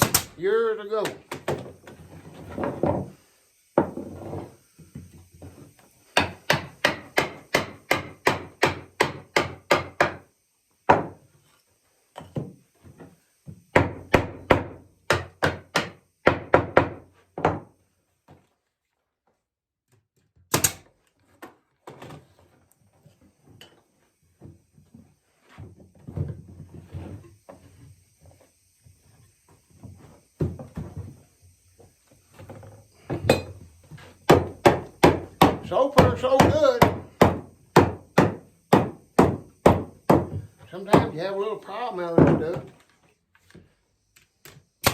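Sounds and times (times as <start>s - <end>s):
wooden chair parts knocked together: 0.0s - 0.4s, 1.0s - 3.2s, 10.9s - 11.2s, 13.7s - 17.7s, 20.3s - 22.3s, 32.5s - 41.2s, 42.1s - 42.8s.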